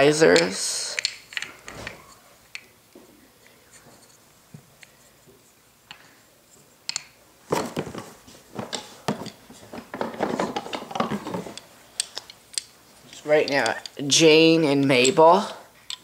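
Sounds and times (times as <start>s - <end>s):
wooden toy pieces clacking: 0.3s - 2.7s, 6.8s - 7.2s, 8.7s - 14.0s.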